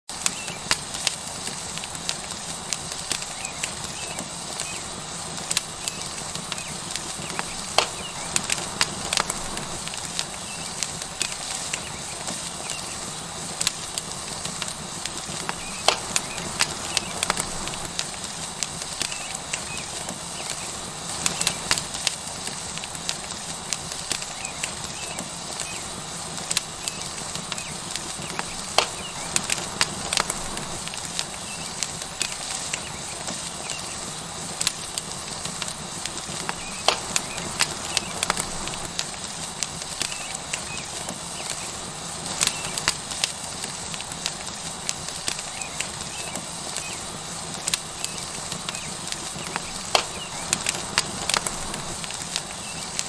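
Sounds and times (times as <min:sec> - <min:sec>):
steak sizzling: 0:00.1 - 0:53.0
wood fire crackling: 0:00.1 - 0:53.0.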